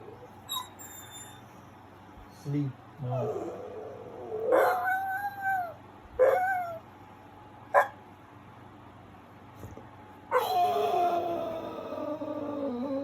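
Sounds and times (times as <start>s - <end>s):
dog whining and moaning: 0.0s - 1.5s, 3.1s - 6.9s, 10.3s - 13.0s.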